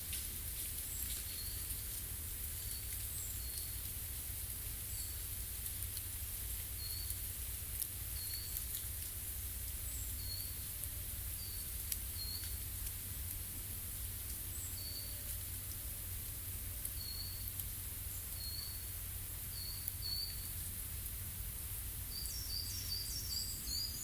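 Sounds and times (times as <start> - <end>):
small bird high chirps: 19.5 - 20.5, 22.1 - 24.0.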